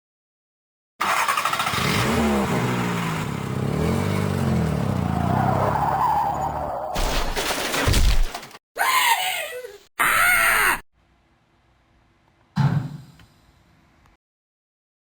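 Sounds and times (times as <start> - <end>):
car engine revving: 1.0 - 5.8.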